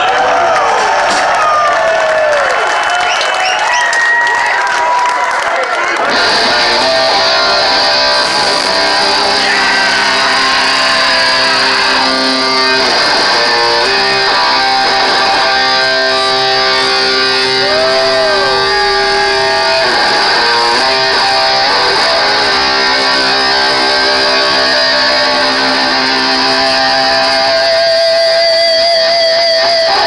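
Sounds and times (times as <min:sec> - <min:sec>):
electric guitars sustained notes: 0:06.0 - 0:30.0
heavy metal band playing live: 0:06.0 - 0:30.0.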